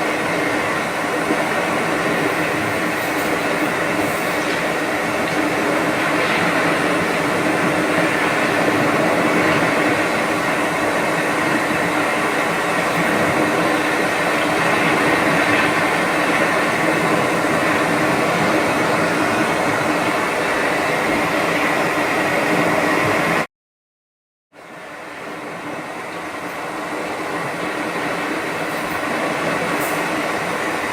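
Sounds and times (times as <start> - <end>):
sound machine rushing hum: 0.0 - 23.5.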